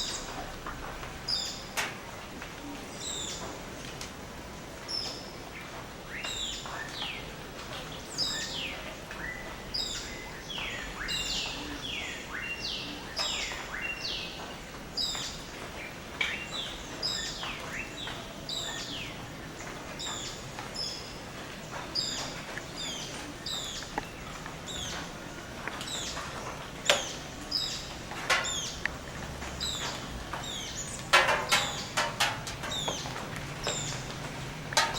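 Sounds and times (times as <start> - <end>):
birds whistling: 21.7 - 34.1.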